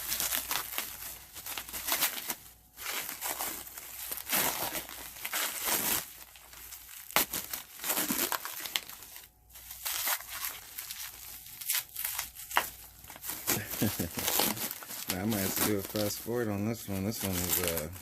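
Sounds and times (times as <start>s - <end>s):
plastic wrap crinkling and tearing: 0.0s - 18.0s.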